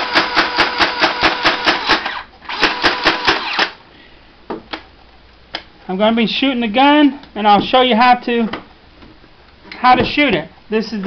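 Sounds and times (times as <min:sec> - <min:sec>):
toy blaster rapid clacking: 0:00.0 - 0:03.8.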